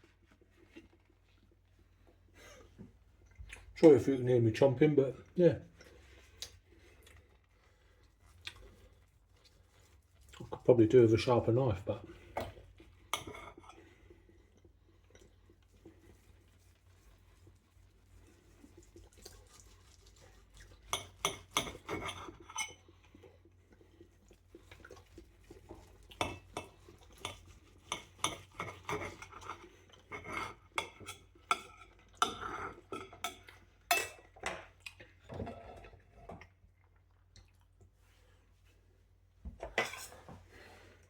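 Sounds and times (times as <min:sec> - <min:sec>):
knife scraping against dish: 0:13.1 - 0:13.8, 0:20.2 - 0:22.8, 0:26.2 - 0:34.3, 0:39.8 - 0:40.2.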